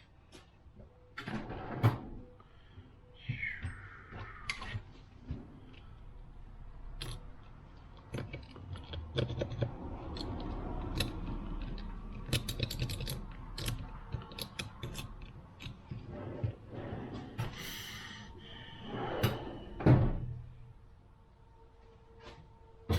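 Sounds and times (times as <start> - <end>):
metal clicks and knocks: 7.0 - 16.1.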